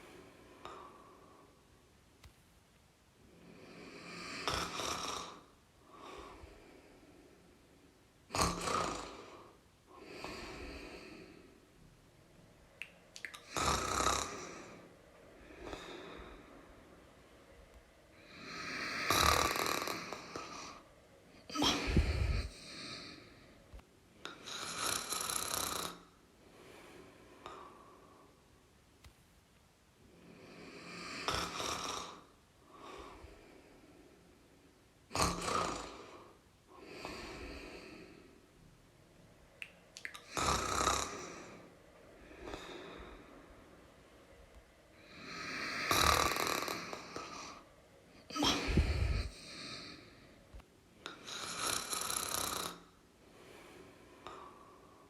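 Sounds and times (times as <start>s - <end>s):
soft breathing: 0.0s - 1.9s, 3.1s - 8.2s, 8.9s - 28.8s, 29.9s - 55.0s
person snoring: 3.4s - 6.5s, 8.3s - 11.6s, 13.3s - 16.5s, 18.2s - 20.8s, 21.5s - 23.4s, 24.3s - 26.1s, 30.2s - 33.4s, 35.1s - 38.3s, 40.0s - 43.4s, 45.0s - 47.6s, 48.2s - 50.2s, 51.1s - 54.9s
deep low snort: 21.6s - 22.6s, 48.4s - 49.5s.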